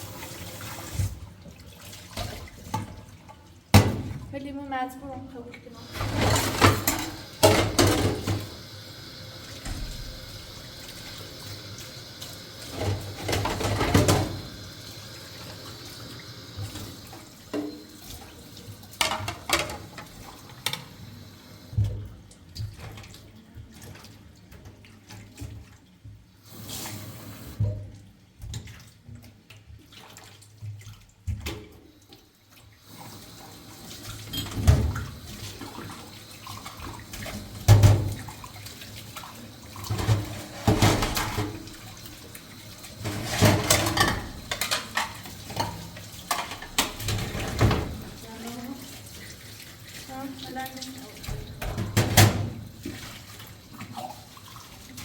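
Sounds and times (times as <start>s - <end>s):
water running from a tap: 0.0s - 55.0s.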